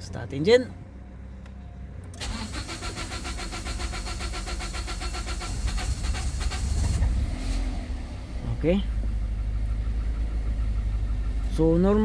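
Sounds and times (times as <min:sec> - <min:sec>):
starter motor cranking engine: 0:02.1 - 0:07.6.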